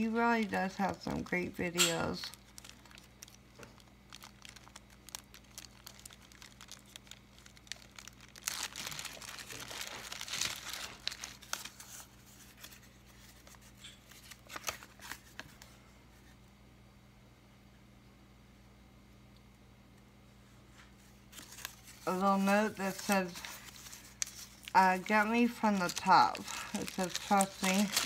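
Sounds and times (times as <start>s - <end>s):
packaging crinkling: 0.2s - 15.8s, 21.3s - 28.0s.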